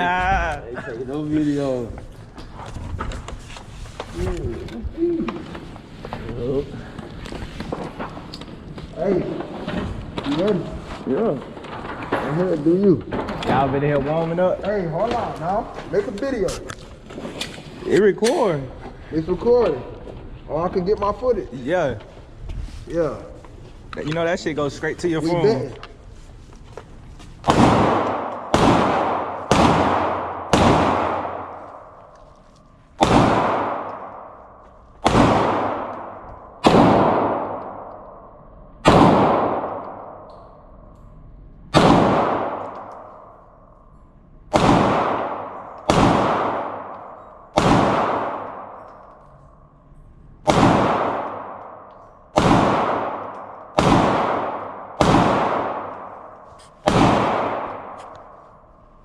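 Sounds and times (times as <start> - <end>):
echoing handgun shots: 27.4 - 32.0, 33.0 - 40.7, 41.7 - 43.6, 44.5 - 49.6, 50.4 - 58.8.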